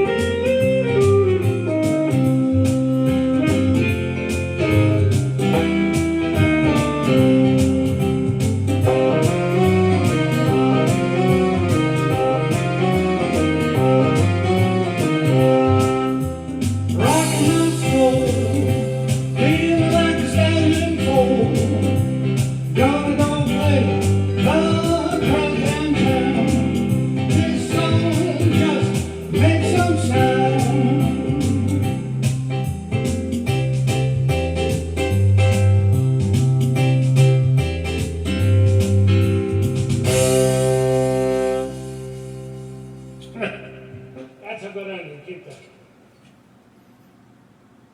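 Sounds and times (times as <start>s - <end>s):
blues band playing: 0.0s - 45.6s
person singing: 17.0s - 32.2s.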